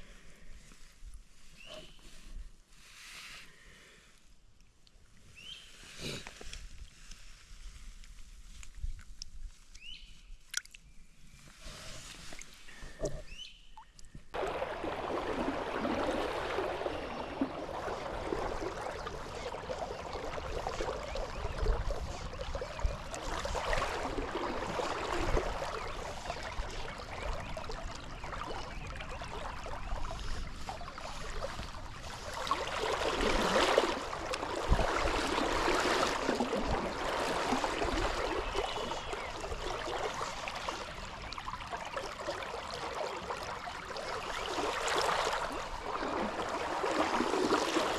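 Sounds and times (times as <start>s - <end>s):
river water gurgling: 14.3s - 47.9s.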